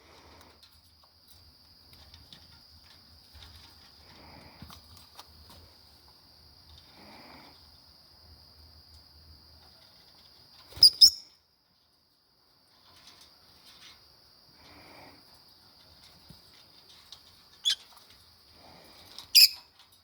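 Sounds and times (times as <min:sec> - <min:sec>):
lovebird chirps: 0:10.8 - 0:11.3, 0:19.3 - 0:19.6.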